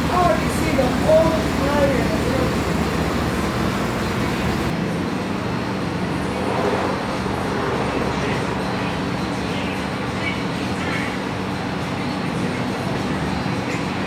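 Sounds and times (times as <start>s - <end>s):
traffic noise: 0.0s - 4.8s
vehicle engine running: 0.0s - 4.8s.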